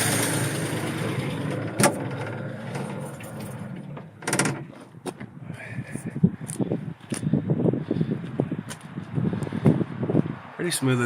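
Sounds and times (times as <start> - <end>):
motor running down: 0.0 - 2.8.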